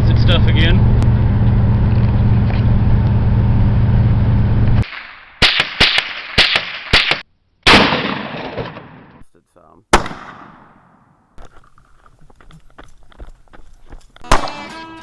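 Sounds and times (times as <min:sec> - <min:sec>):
vehicle engine drone: 0:00.0 - 0:04.8
echoing gunshot: 0:04.8 - 0:09.2, 0:09.9 - 0:11.2, 0:14.3 - 0:14.7
sharp gunshots: 0:04.8 - 0:09.2, 0:09.9 - 0:11.2, 0:14.3 - 0:14.7.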